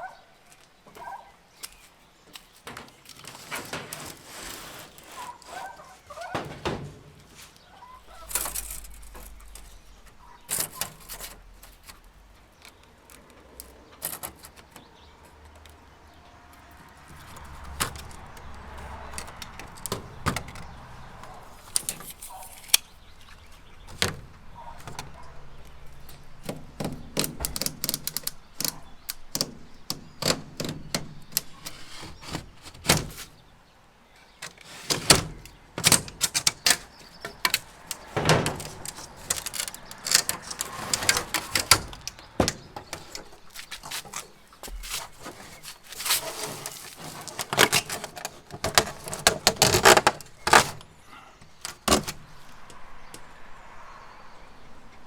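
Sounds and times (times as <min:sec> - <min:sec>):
hard objects knocking and clattering: 0:35.8 - 0:43.4.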